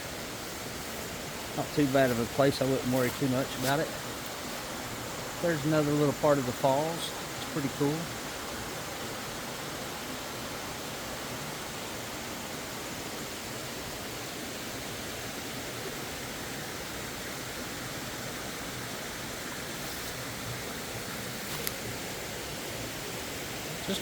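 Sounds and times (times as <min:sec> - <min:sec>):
small waterfall splashing: 0:00.0 - 0:24.0.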